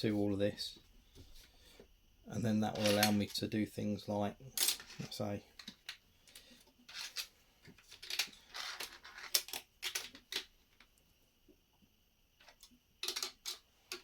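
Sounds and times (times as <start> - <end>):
plastic bricks clicking: 6.9 - 10.8, 12.4 - 14.0.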